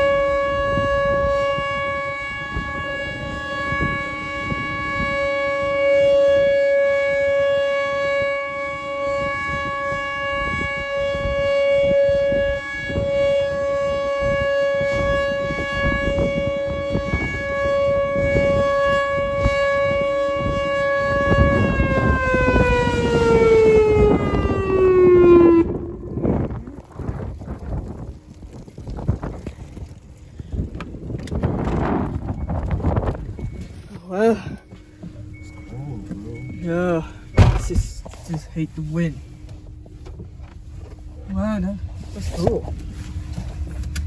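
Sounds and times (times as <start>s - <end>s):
warning siren wailing: 0.0s - 44.0s.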